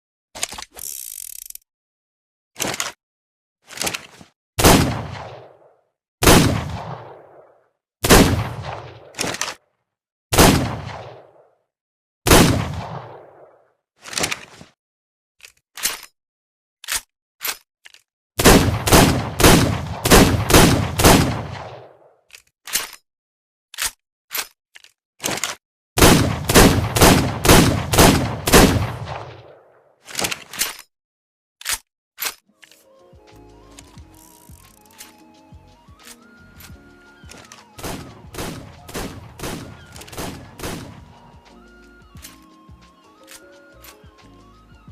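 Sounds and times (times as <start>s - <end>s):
sharp mechanical clicks: 0.4s - 1.7s, 33.7s - 35.2s
revolver gunshots with echo: 4.6s - 9.4s, 10.3s - 11.5s, 12.3s - 13.6s, 18.4s - 22.1s, 26.0s - 29.8s, 37.8s - 41.2s.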